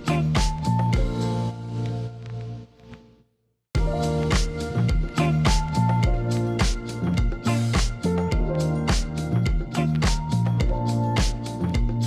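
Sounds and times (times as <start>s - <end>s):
upbeat funk music: 0.0s - 1.7s, 3.8s - 12.0s.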